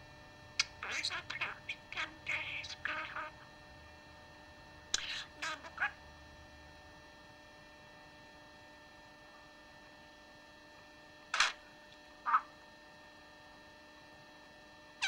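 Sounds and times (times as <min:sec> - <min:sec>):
faint electrical hum: 0:00.0 - 0:15.0
budgerigar chirps: 0:00.6 - 0:03.3, 0:05.0 - 0:06.0, 0:12.3 - 0:12.5.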